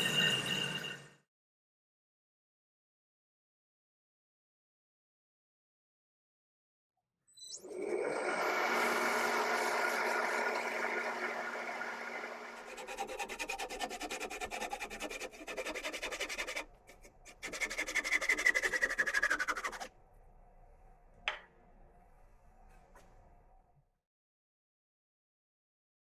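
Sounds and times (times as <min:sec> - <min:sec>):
lathe whine: 0:07.6 - 0:19.8
sandpaper rubbing on spinning wood: 0:12.7 - 0:19.9.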